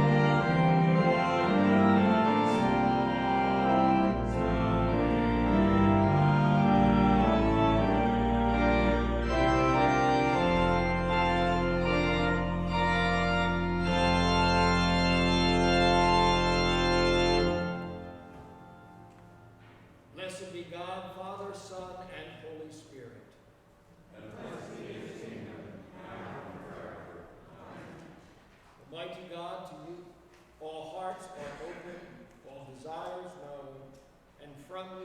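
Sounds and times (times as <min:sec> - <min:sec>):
church organ playing chords: 0:00.0 - 0:21.2.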